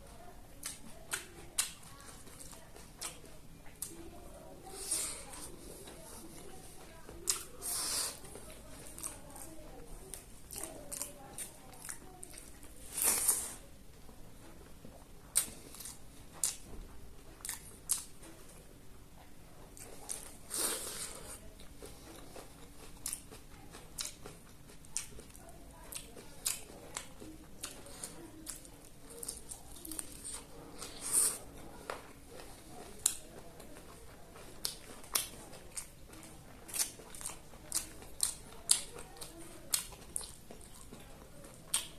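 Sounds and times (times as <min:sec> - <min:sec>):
person chewing and smacking: 0:00.6 - 0:04.1, 0:04.7 - 0:13.6, 0:14.5 - 0:18.6, 0:19.2 - 0:41.9
food crunching and tearing: 0:10.1 - 0:13.6, 0:19.8 - 0:41.9.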